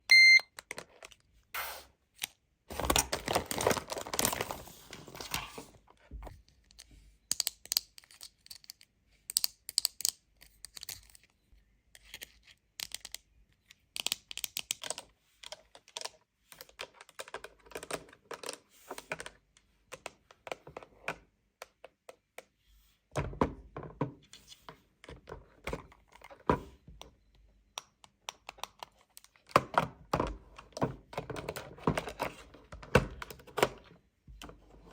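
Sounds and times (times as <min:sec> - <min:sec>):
short electronic beep: 0:00.0 - 0:00.5
rustling packaging: 0:02.7 - 0:05.7
plastic pieces clicking and tapping: 0:06.5 - 0:22.6, 0:27.0 - 0:34.0.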